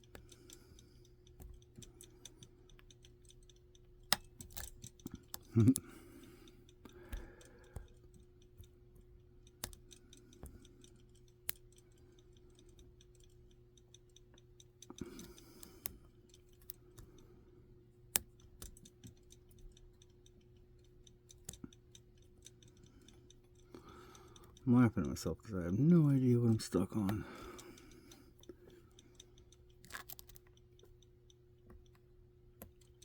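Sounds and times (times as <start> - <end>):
lock picks clicking in padlock: 0.0 - 17.2, 26.9 - 31.1
steady low hum: 0.0 - 33.0.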